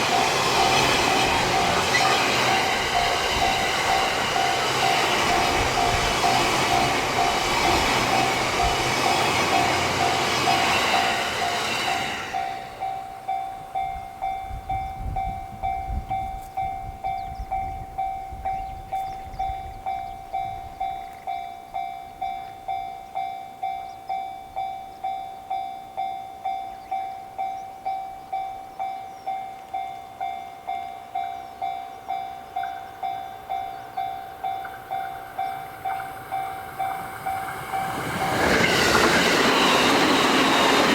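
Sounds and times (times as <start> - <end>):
train passing loudly: 0.0 - 23.7, 30.1 - 40.9
level crossing warning bell ringing: 0.0 - 40.9.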